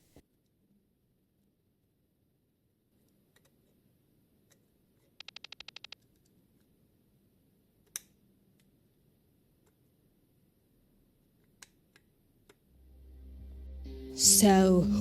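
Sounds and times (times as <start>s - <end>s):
small clicks: 4.5s - 6.3s.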